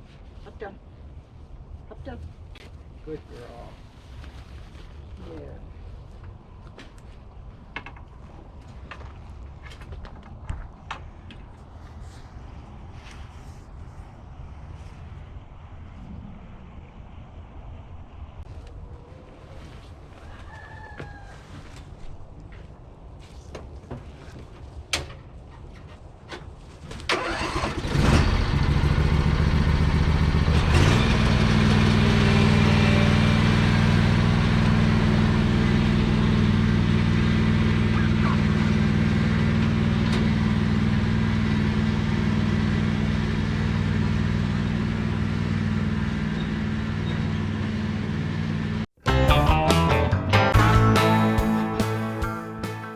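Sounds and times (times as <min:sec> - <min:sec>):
engine starting and running: 0:27.0 - 0:48.9.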